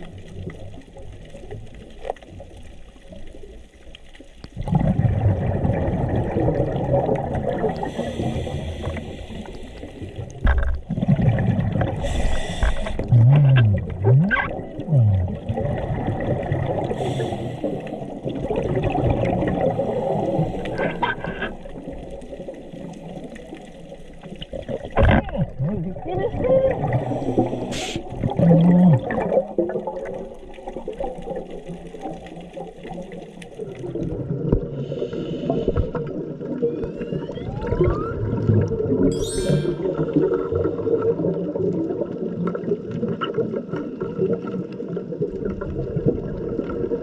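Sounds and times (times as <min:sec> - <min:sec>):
bubbling exhaled air underwater: 0:00.0 - 0:47.0
regulator inhale hisses: 0:07.8 - 0:10.2, 0:12.0 - 0:13.0, 0:16.9 - 0:18.0, 0:27.1 - 0:28.2, 0:34.8 - 0:35.9.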